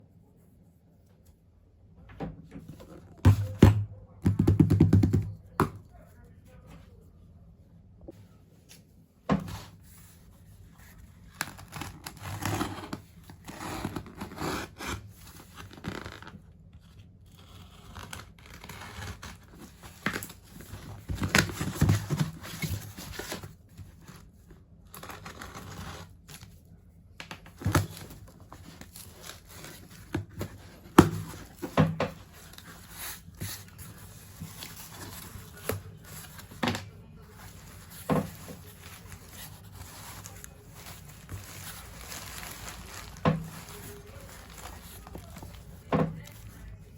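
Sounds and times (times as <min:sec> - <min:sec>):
cardboard and plastic crinkling: 0:17.9 - 0:26.6, 0:27.2 - 0:46.9.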